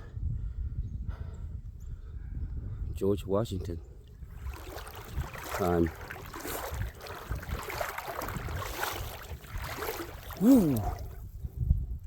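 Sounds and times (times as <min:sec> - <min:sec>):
water splashing and sloshing: 0:04.0 - 0:11.4.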